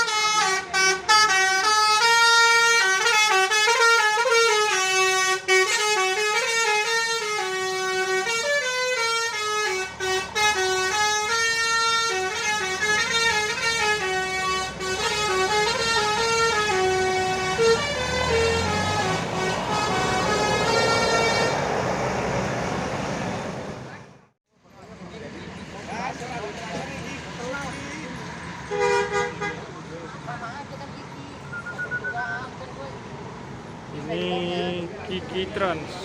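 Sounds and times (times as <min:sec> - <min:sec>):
melodic air horn playing a tune: 0:00.0 - 0:21.6.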